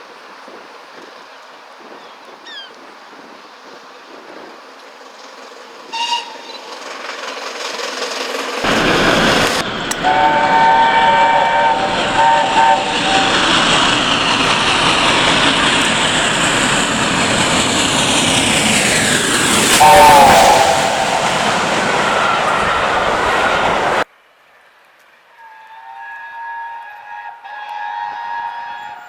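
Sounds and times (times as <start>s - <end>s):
train rushing noise: 3.0s - 24.1s
steam locomotive chime whistle: 5.9s - 6.7s, 8.6s - 16.1s, 19.5s - 24.1s, 25.3s - 29.0s.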